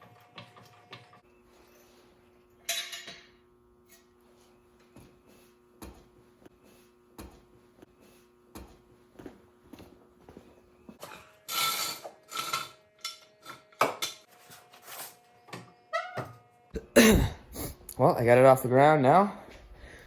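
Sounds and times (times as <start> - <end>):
steady low hum: 16.8 - 20.0.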